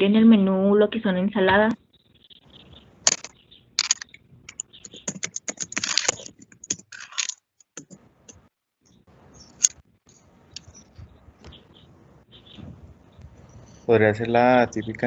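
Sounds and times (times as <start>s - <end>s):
computer keyboard typing: 3.1s - 8.0s.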